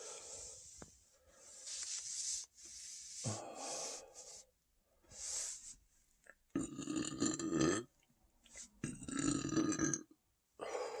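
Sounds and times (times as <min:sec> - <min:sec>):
person burping loudly: 0:06.5 - 0:07.9, 0:08.8 - 0:10.2.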